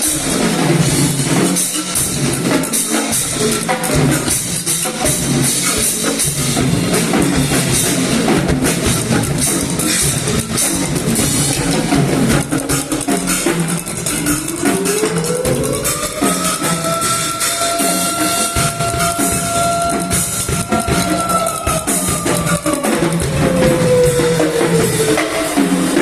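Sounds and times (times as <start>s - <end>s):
fast multipercussion drumming: 0.0s - 26.0s
rising pitched wail: 14.3s - 26.0s.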